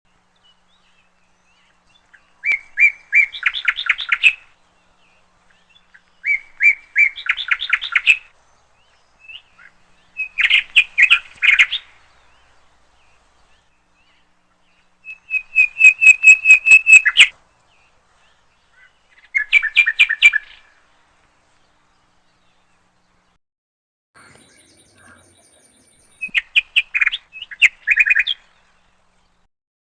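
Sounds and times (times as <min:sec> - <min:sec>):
songbird chirping: 0:24.2 - 0:29.5.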